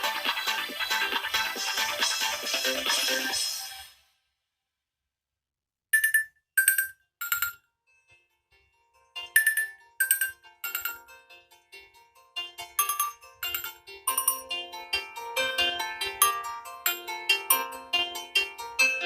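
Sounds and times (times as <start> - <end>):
phone ringtone chime melody: 6.0 - 7.6, 9.2 - 11.2, 12.6 - 19.0.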